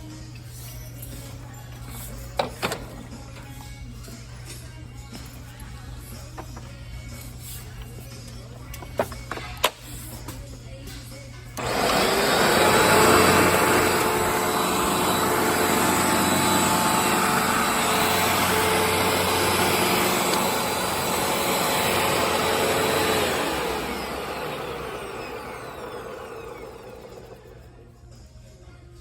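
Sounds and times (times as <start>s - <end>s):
vacuum cleaner motor whine: 11.6s - 27.8s.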